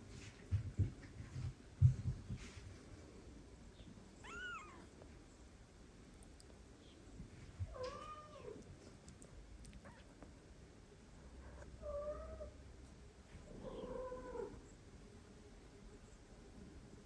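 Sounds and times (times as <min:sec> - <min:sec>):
cat meowing: 0:04.2 - 0:04.9.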